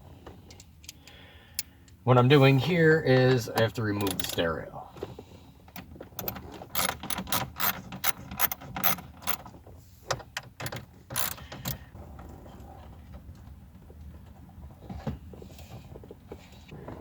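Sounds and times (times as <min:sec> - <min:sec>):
ratchet wrench clicking: 0:11.1 - 0:11.4.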